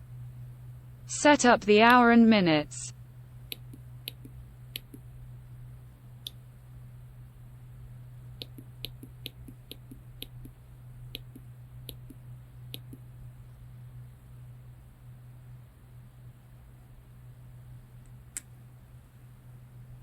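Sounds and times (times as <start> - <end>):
steady low hum: 0.0 - 20.0
push buttons clicking: 1.3 - 2.7.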